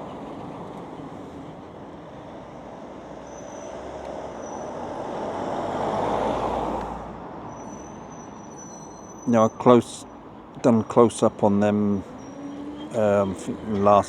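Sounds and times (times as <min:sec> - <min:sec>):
road traffic: 0:00.0 - 0:14.0
vehicle passing close by: 0:02.5 - 0:08.2, 0:11.5 - 0:14.0.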